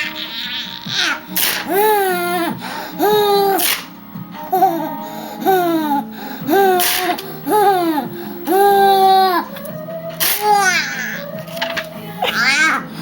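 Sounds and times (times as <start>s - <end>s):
small child laughing hysterically: 0.0s - 3.8s, 10.2s - 11.5s, 12.2s - 12.9s
plastic sheet ripping: 1.3s - 1.7s, 3.6s - 3.9s, 6.8s - 7.2s, 10.2s - 12.0s.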